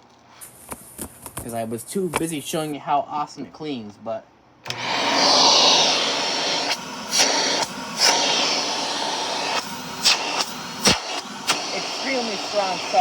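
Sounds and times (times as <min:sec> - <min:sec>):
vacuum cleaner running: 0:04.7 - 0:13.0.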